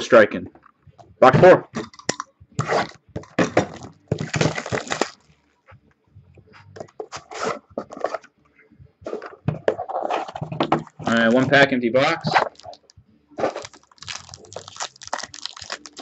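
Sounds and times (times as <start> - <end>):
wrapping and cardboard tearing: 3.6 - 5.2, 12.3 - 16.0.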